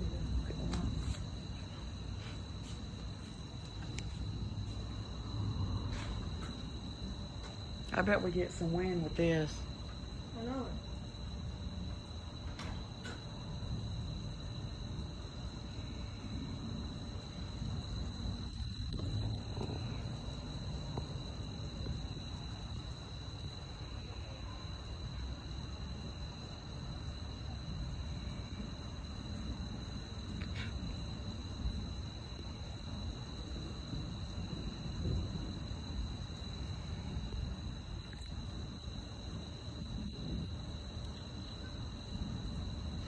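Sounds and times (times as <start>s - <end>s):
low rumbling noise: 0.0s - 9.8s, 13.4s - 24.6s
crickets chirring: 0.0s - 43.0s.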